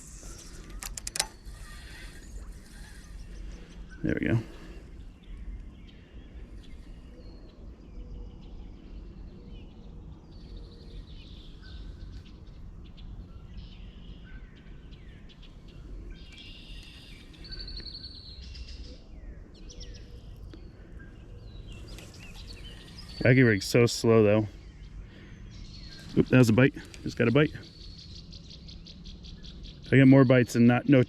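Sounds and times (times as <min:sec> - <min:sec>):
songbirds chirping: 0:00.0 - 0:31.0
bird trill: 0:10.3 - 0:31.0.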